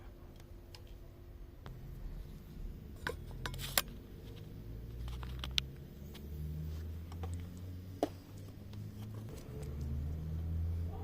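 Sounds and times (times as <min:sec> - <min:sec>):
steady low rumble: 0:01.1 - 0:11.0.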